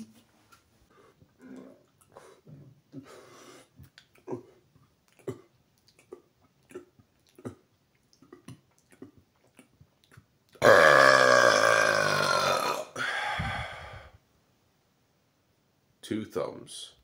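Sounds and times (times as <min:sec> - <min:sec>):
man gulping air: 0:03.7 - 0:14.2
loud long burp: 0:10.6 - 0:13.1.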